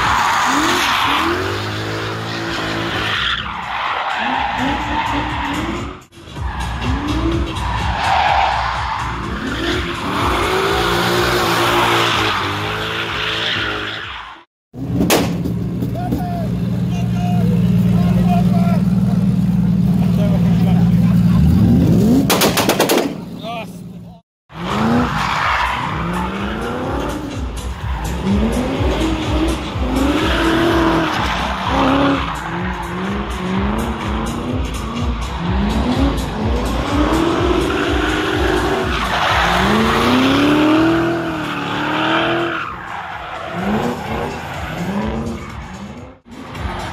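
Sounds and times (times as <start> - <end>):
car engine revving: 0.0 - 13.9, 14.8 - 46.9
tyres squealing: 24.7 - 46.9.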